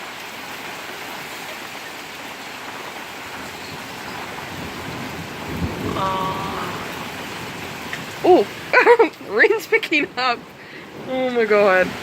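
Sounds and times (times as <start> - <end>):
heavy rain pouring: 0.0 - 12.0
thunder rumbling: 3.4 - 12.0.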